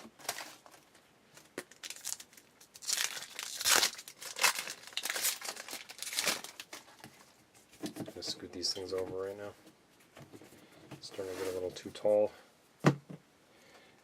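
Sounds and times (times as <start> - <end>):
wrapper crinkling: 0.0 - 7.4
card pack being torn open: 1.6 - 6.8.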